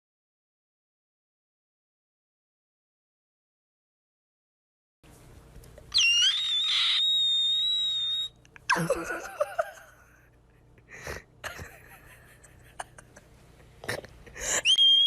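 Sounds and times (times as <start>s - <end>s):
high-pitched shriek: 5.9s - 8.4s, 14.6s - 15.0s
wavering cry: 5.9s - 9.1s, 14.5s - 15.0s.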